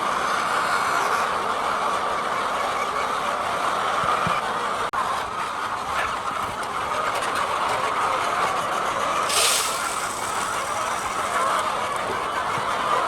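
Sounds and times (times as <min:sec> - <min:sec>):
brief hiss: 0:09.3 - 0:11.6.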